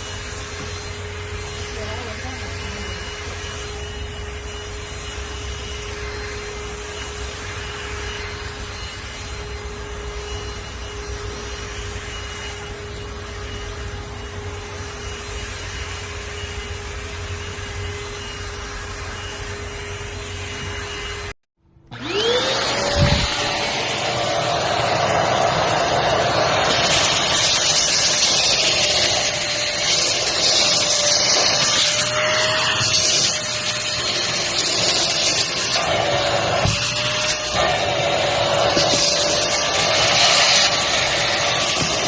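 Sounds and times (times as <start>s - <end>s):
handheld vacuum cleaner running: 0.0s - 42.0s
louder motor spinning up: 17.5s - 42.0s.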